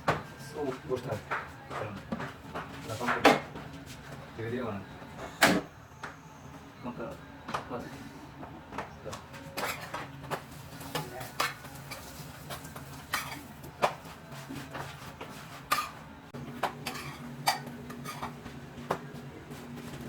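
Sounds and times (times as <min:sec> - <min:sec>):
dishes and utensils clinking: 0:09.5 - 0:15.0, 0:15.6 - 0:16.0, 0:16.6 - 0:19.0.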